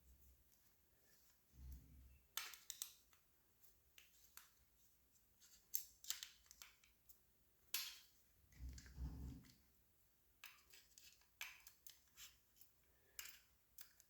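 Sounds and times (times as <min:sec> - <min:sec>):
clicks of parts being handled: 0:02.3 - 0:03.2, 0:05.7 - 0:06.9.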